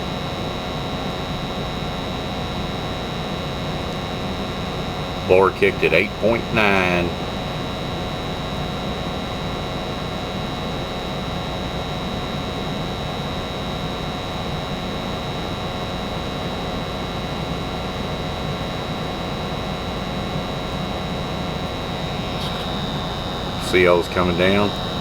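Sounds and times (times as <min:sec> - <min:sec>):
thin high whine: 0:04.1 - 0:08.4, 0:20.5 - 0:25.0
gas furnace blower rushing air: 0:21.6 - 0:25.0.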